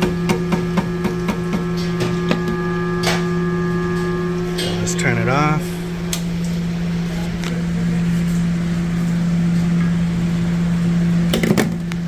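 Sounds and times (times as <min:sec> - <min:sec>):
machine hum: 0:00.0 - 0:12.0.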